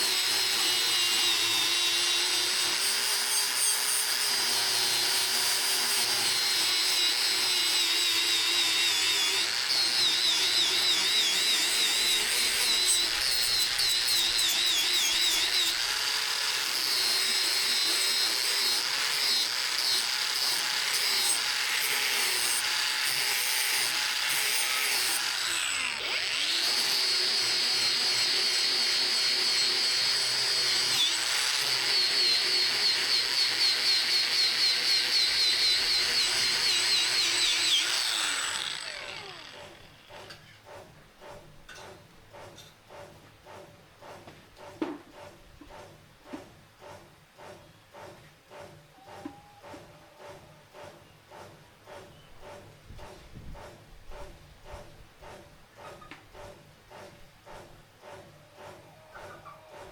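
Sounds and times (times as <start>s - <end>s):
small power tool whining: 0.0s - 40.6s.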